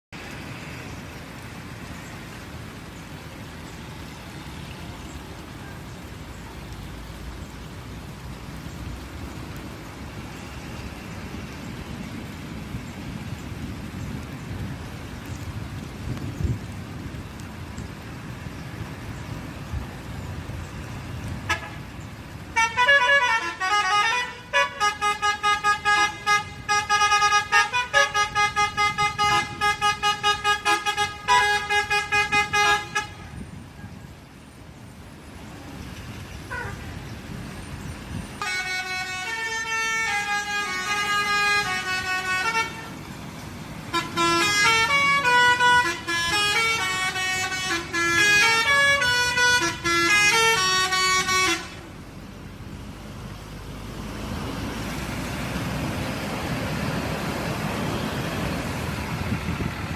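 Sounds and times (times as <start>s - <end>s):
road traffic rumble: 0.1s - 59.9s
multi-tone bus horn melody: 21.5s - 33.6s, 36.5s - 37.0s, 38.4s - 52.0s.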